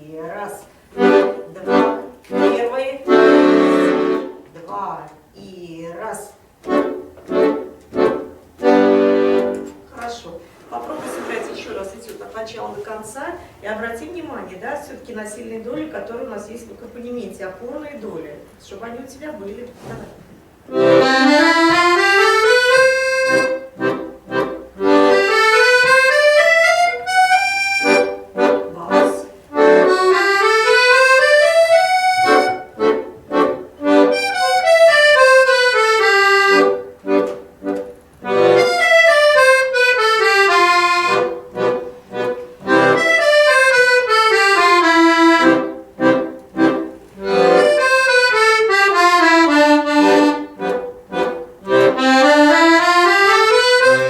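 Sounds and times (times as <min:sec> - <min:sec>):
accordion playing: 0:00.0 - 0:04.5, 0:06.4 - 0:12.6, 0:20.5 - 0:54.0.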